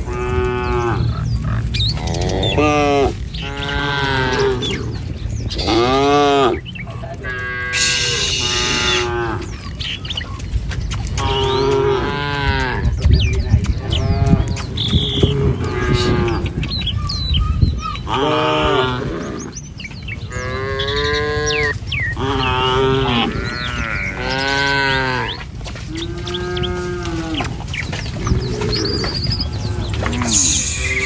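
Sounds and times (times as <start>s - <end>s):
cattle mooing: 0.0s - 9.8s, 11.2s - 13.0s, 13.8s - 16.7s, 18.1s - 19.6s, 20.3s - 31.0s.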